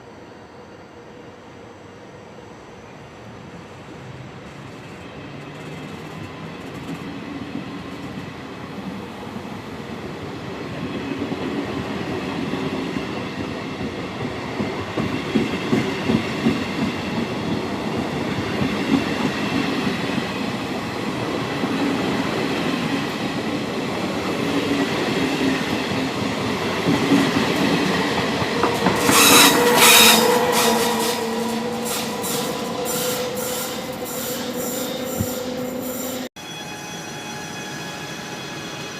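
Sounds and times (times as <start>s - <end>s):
train rumble: 3.1s - 36.3s
wheels clacking over rail joints: 25.7s - 33.9s
wheels squealing on rails: 27.2s - 38.9s.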